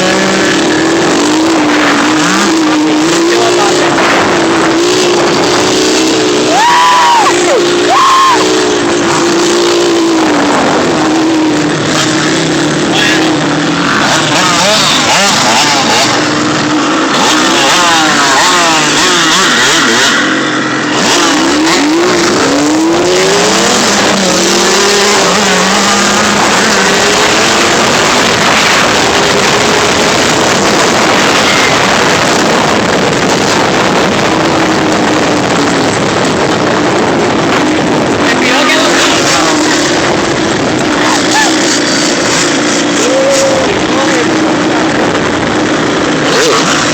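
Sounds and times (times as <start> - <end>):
constant rushing noise: 0.0 - 46.9
off-road vehicle engine revving: 0.0 - 46.9.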